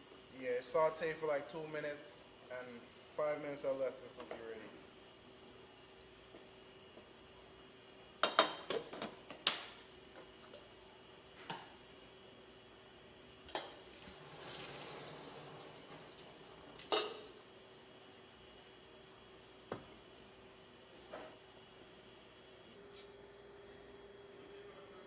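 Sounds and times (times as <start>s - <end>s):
faint steady hum: 0.0s - 25.0s
cookware and utensils clattering: 16.8s - 17.4s.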